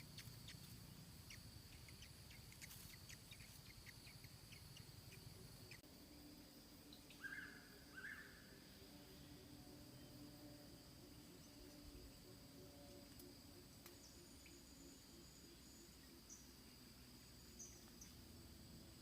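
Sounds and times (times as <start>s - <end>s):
small birds chirping: 0.0s - 5.8s, 6.8s - 10.2s, 13.8s - 19.0s.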